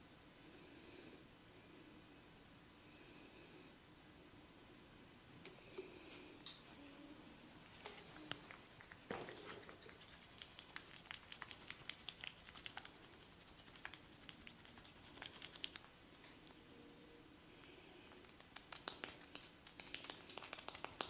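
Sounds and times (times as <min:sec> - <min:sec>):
hands patting head in massage: 0:09.2 - 0:15.8, 0:18.2 - 0:21.0.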